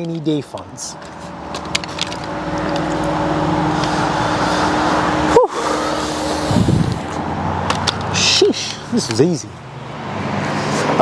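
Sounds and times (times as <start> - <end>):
snowblower engine running: 1.6 - 7.3.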